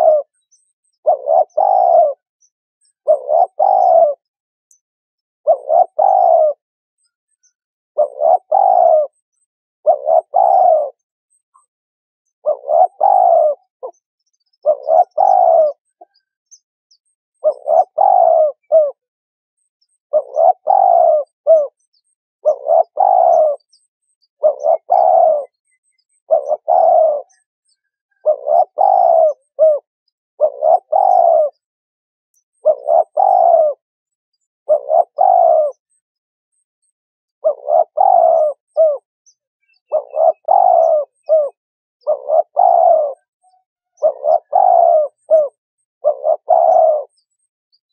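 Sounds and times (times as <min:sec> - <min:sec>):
dove cooing: 0:00.0 - 0:02.3, 0:02.9 - 0:04.3, 0:05.4 - 0:06.6, 0:08.0 - 0:09.2, 0:09.8 - 0:11.7, 0:12.4 - 0:14.0, 0:14.6 - 0:16.3, 0:17.4 - 0:19.1, 0:20.1 - 0:21.8, 0:22.4 - 0:31.6, 0:32.6 - 0:33.8, 0:34.6 - 0:35.9, 0:37.4 - 0:39.1, 0:39.7 - 0:47.2.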